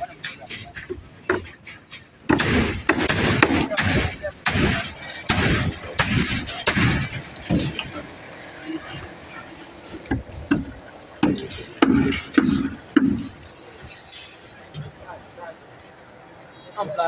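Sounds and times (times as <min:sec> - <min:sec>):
construction knocks and clinks: 0:00.0 - 0:03.8, 0:04.5 - 0:15.0.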